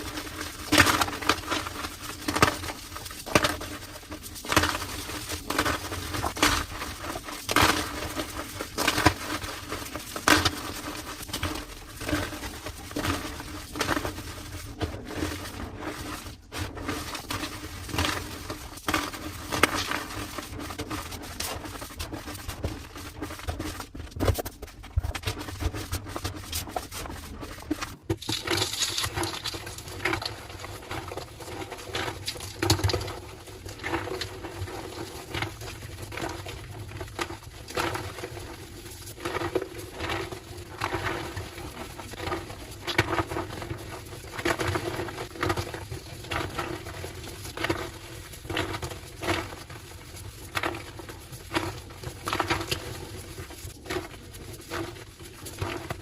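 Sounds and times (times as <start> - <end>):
chalk being crushed: 27.8 - 30.2.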